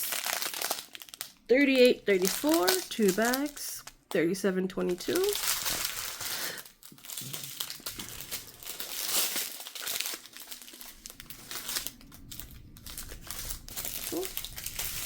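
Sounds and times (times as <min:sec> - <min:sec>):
plastic bags crinkling: 0:00.0 - 0:15.0.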